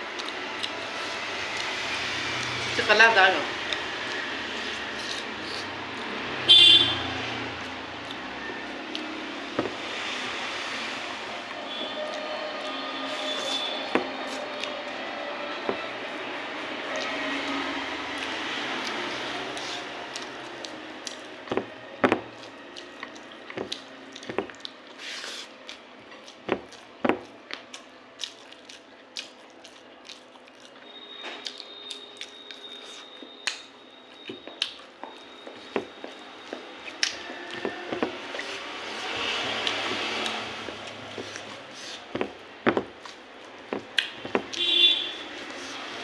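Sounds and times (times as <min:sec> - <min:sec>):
moist food squishing: 0:00.0 - 0:06.4, 0:07.0 - 0:46.0
wet chewing smacks: 0:22.4 - 0:42.0.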